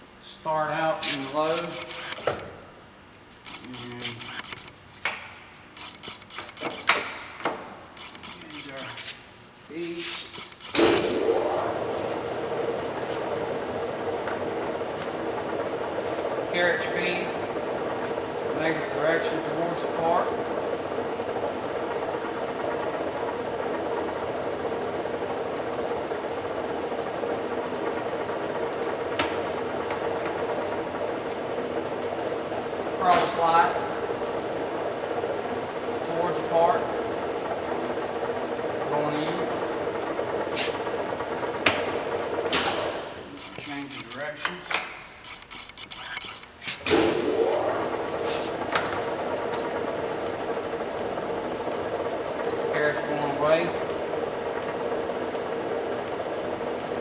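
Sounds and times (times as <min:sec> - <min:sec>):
lathe gear hum: 0:01.0 - 0:02.4, 0:03.4 - 0:04.8, 0:05.6 - 0:09.2, 0:10.0 - 0:57.0
sharp click: 0:01.0 - 0:02.5, 0:03.5 - 0:04.8, 0:05.8 - 0:07.2, 0:08.0 - 0:09.1, 0:10.0 - 0:11.3, 0:42.4 - 0:47.1.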